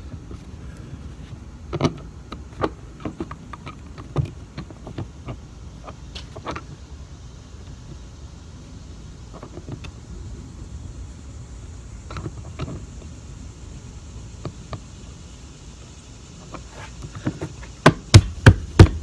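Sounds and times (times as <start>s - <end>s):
sharp knocks: 17.8s - 19.0s.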